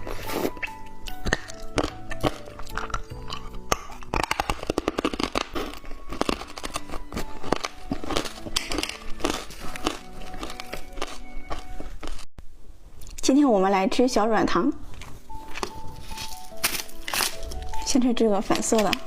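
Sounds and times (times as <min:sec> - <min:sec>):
background music: 0:00.0 - 0:12.2, 0:13.8 - 0:19.0
hard candy crunching: 0:00.0 - 0:12.3, 0:14.9 - 0:19.0.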